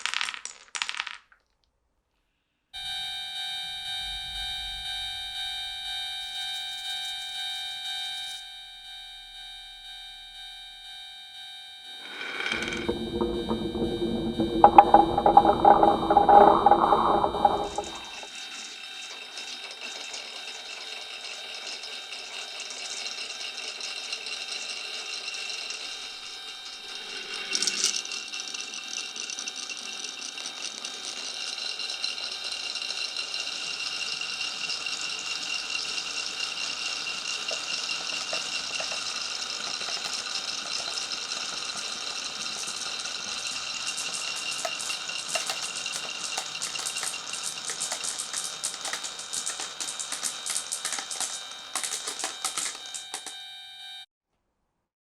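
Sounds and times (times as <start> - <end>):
marbles rolling on a marble run: 0.0 - 1.6, 12.0 - 53.3
marble knock: 12.1 - 18.1
quick clicks: 44.0 - 53.4.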